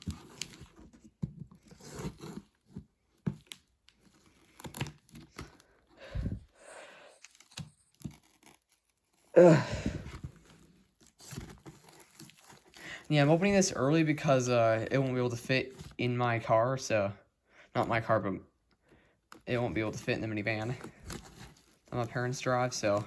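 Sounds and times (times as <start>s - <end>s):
tape and cardboard tearing: 0.0s - 5.7s, 7.3s - 9.3s.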